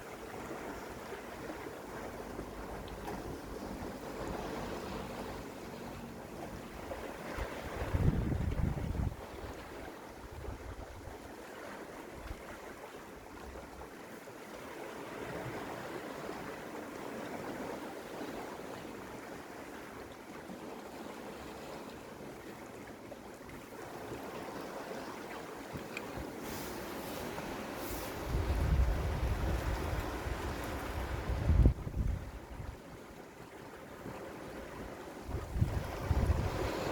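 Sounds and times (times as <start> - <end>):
waves washing against rocks: 23.6 - 32.9, 33.8 - 36.9.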